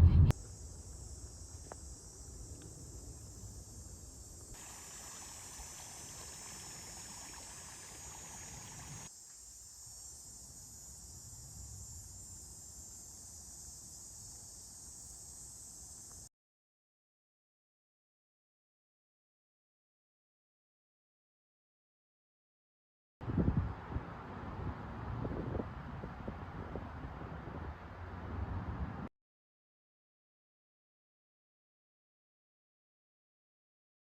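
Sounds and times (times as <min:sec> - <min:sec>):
faint low rumble: 0:00.0 - 0:00.6
insects chirring: 0:00.3 - 0:16.3.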